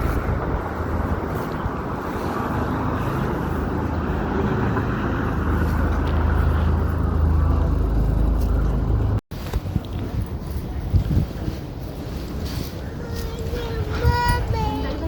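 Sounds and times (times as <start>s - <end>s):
vehicle engine and tyres rumbling: 0.0s - 15.0s.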